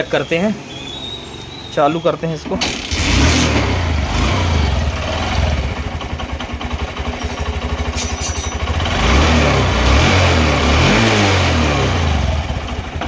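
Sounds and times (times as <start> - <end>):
motorcycle engine idling and revving: 0.0 - 13.0.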